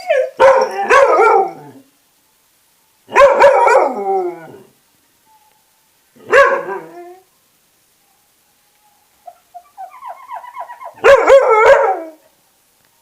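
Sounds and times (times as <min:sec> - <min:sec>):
dog barking and howling: 0:00.0 - 0:01.9, 0:03.1 - 0:04.7, 0:06.2 - 0:07.3, 0:08.9 - 0:12.3.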